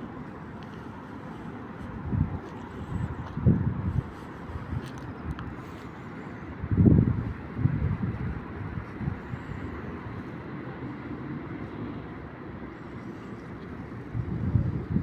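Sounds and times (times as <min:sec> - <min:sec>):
steady low rumble: 0:00.0 - 0:15.0
wind on microphone: 0:01.8 - 0:05.8, 0:06.5 - 0:10.8, 0:13.2 - 0:15.0.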